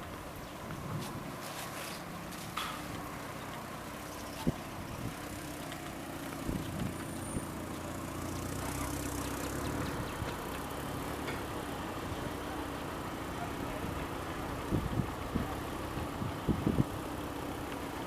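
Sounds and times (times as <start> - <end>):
engine idling: 0.0 - 18.0.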